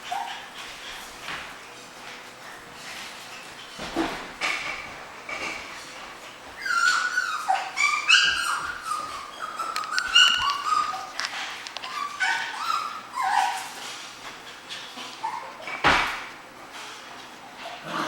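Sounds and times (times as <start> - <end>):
puppies yipping and whimpering: 0.0 - 1.2, 6.3 - 15.8.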